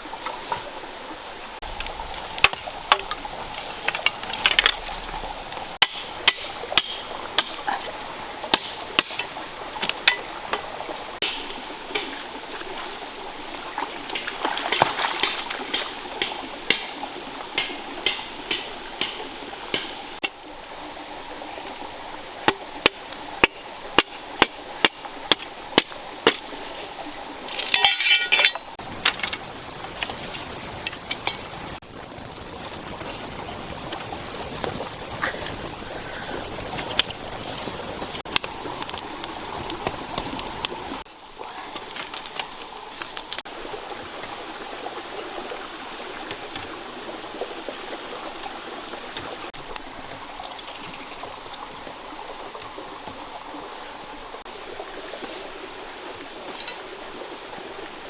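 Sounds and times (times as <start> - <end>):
running water: 0.0 - 58.0
cooking utensils clinking: 10.0 - 10.6, 27.5 - 29.4, 30.8 - 31.7.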